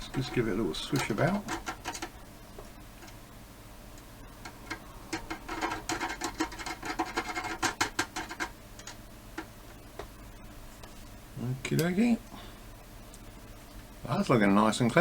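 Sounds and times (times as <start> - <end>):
metal rattling in plastic tray: 0.0 - 2.2, 5.1 - 8.6.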